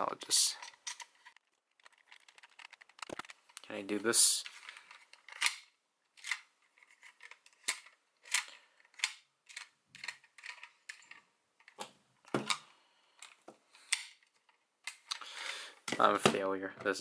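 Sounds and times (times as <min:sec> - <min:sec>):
plastic toy parts clicking: 0:00.6 - 0:03.6, 0:04.4 - 0:11.9, 0:13.2 - 0:15.2.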